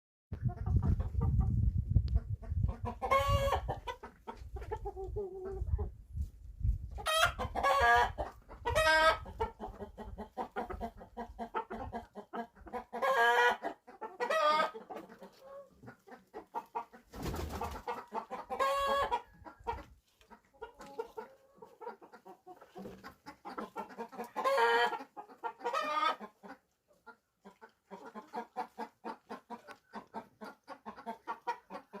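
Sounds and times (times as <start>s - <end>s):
chickens clucking and squawking: 0.4s - 32.0s.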